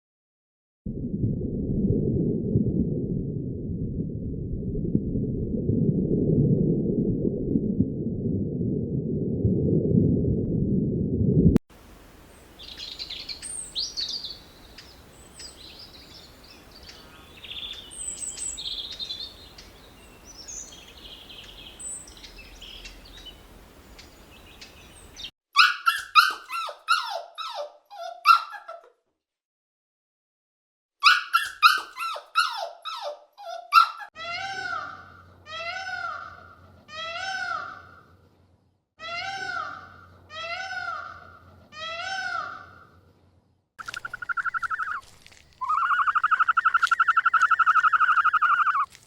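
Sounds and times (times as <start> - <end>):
low hiss: 11.8 - 25.3
animal yelping calls: 25.6 - 28.8, 31.0 - 34.1, 43.8 - 48.9
faint high chirping: 43.8 - 48.9.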